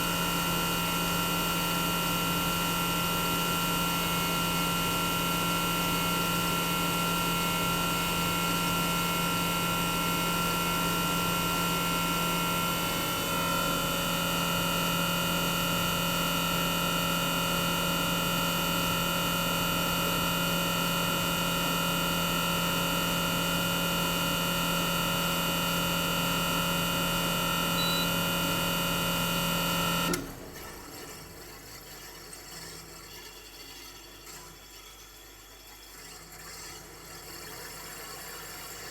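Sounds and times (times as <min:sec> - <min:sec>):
compressor humming: 0:11.7 - 0:17.0, 0:22.4 - 0:30.6.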